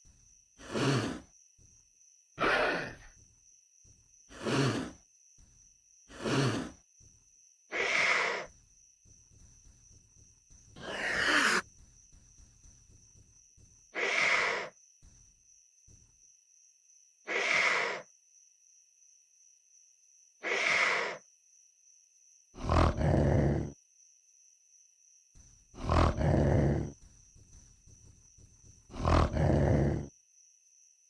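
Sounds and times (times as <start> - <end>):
dinosaur calls and roars: 10.8 - 11.6.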